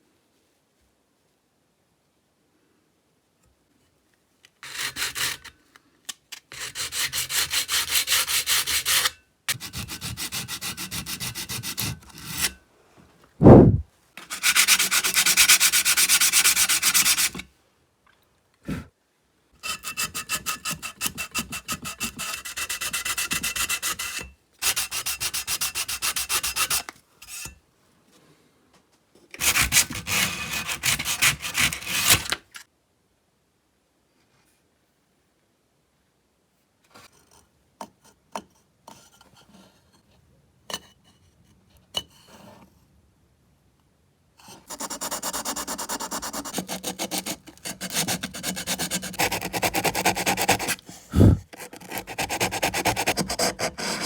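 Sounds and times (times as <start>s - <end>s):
hand sanding strokes: 13.4s - 17.4s, 44.9s - 54.0s.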